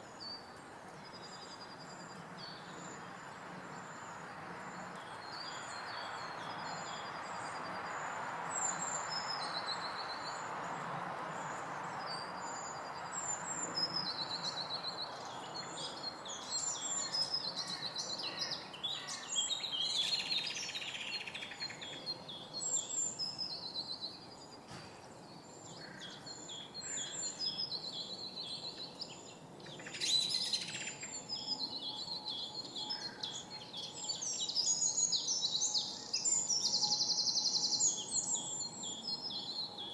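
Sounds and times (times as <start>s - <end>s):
birds singing and chirping: 0.0s - 39.9s.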